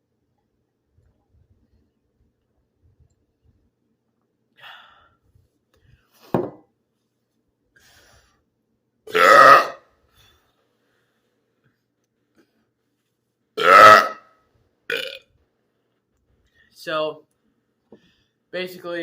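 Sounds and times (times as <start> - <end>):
boy burping: 9.1 - 9.9, 13.6 - 14.3, 14.9 - 15.2.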